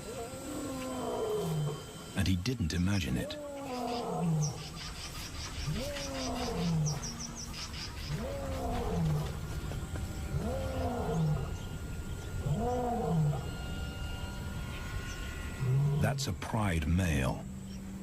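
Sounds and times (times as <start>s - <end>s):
lion roaring: 0.0s - 2.1s, 3.2s - 4.8s, 5.6s - 13.6s, 15.6s - 16.1s.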